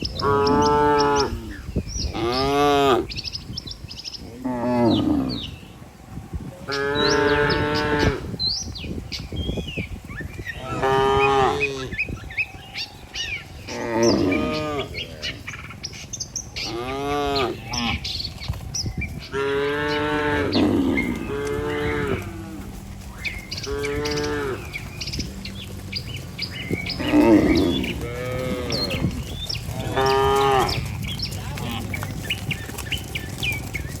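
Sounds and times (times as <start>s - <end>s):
cattle mooing: 0.1s - 3.2s, 6.7s - 8.3s, 10.6s - 12.0s, 13.6s - 15.5s, 16.6s - 18.1s, 19.3s - 33.5s.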